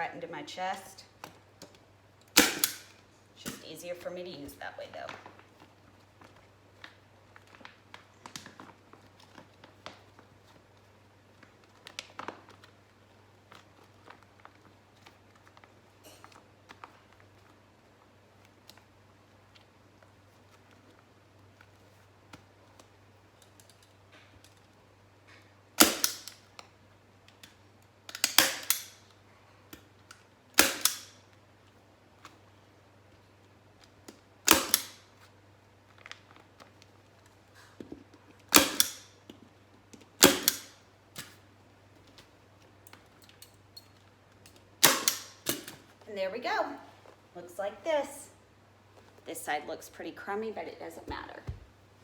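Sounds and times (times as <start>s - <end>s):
staple gun firing: 2.3s - 3.6s, 25.8s - 26.4s, 28.1s - 29.0s, 30.6s - 31.2s, 34.5s - 35.0s, 38.5s - 39.1s, 40.2s - 41.4s, 44.8s - 45.8s
plastic sheet crinkling: 4.2s - 23.2s.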